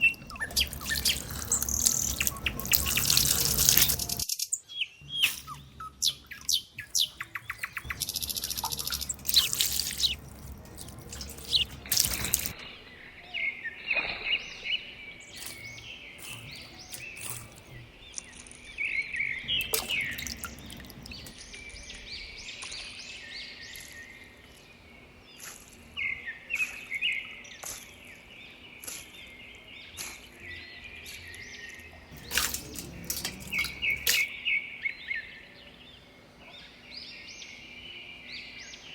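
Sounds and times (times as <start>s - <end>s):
small birds chirping: 0.0s - 12.7s, 15.1s - 22.2s, 32.1s - 34.4s.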